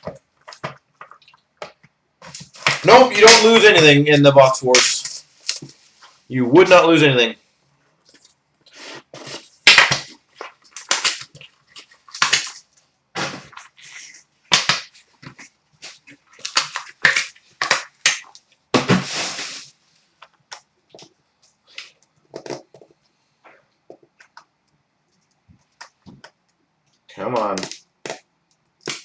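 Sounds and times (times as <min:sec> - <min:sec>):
packaging wrap crinkling: 0:02.2 - 0:06.3, 0:08.0 - 0:19.8.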